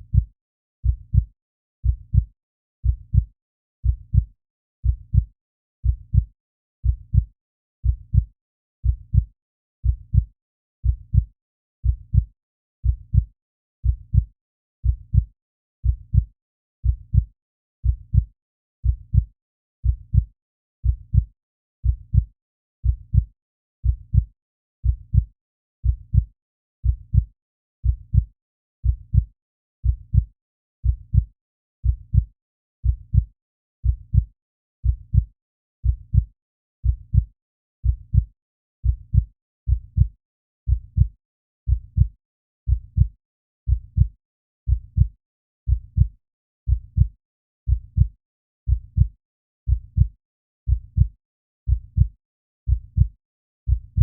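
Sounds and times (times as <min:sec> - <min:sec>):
heartbeat thumps: 0:00.8 - 0:03.3, 0:03.9 - 0:04.3, 0:05.1 - 0:06.3, 0:24.1 - 0:25.3, 0:35.9 - 0:39.2, 0:39.9 - 0:40.1, 0:47.7 - 0:48.1, 0:49.7 - 0:50.1, 0:50.7 - 0:51.1, 0:51.7 - 0:52.1, 0:52.7 - 0:53.1, 0:53.7 - 0:54.0.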